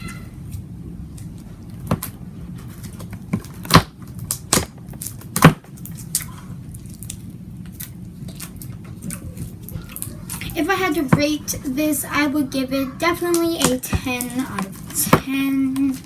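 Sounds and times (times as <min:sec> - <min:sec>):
slime crackling and popping: 0:02.8 - 0:10.5.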